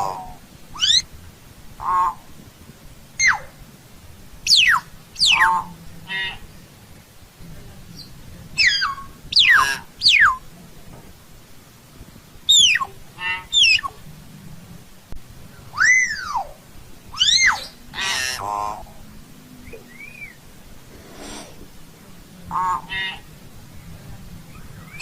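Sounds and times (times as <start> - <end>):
harsh grating bird calls: 0.0 - 1.1, 1.8 - 2.3, 3.2 - 3.5, 4.5 - 6.5, 8.6 - 10.4, 12.5 - 14.0, 17.2 - 19.0, 22.5 - 23.3
myna whistles: 19.7 - 20.4.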